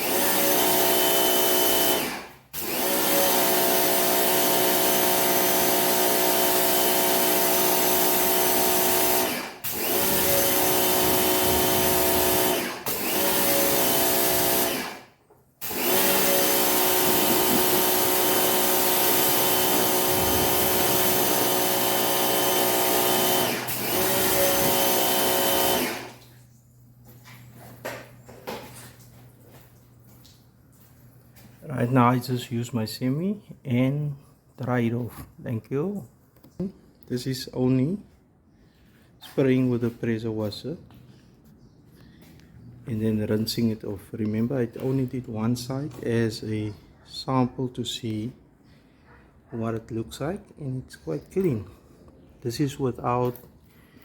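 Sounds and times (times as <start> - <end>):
pressure washer motor whine: 0.0 - 26.3.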